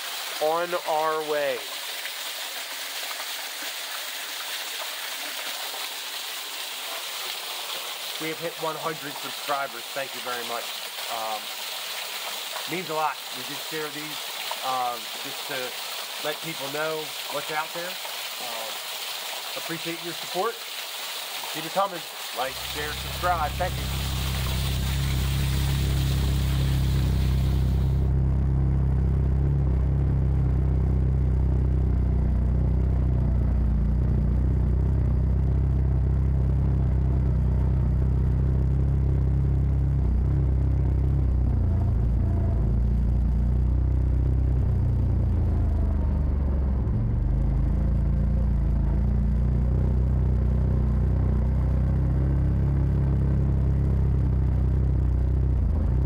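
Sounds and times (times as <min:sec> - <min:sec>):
utility vehicle engine droning: 0:08.2 - 0:11.5, 0:21.6 - 0:56.0.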